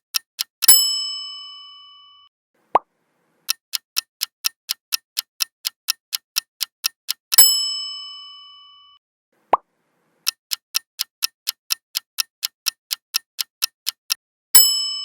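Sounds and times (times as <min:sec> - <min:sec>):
clock ticking: 0:00.0 - 0:00.9, 0:03.5 - 0:07.6, 0:10.2 - 0:14.8.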